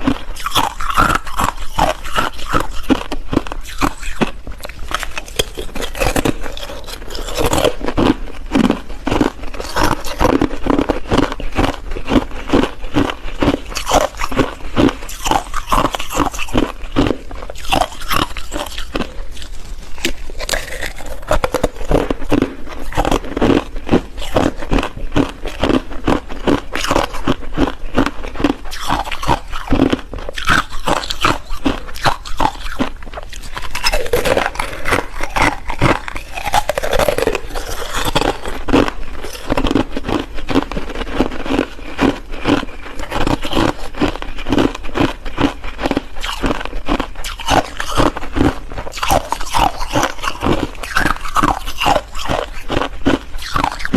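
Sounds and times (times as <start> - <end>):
ice being chewed: 0.0 - 53.9.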